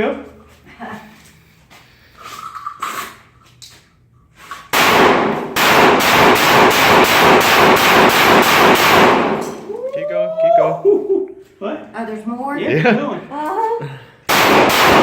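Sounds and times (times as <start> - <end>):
pistol firing rapidly: 4.8 - 9.4, 14.3 - 15.0.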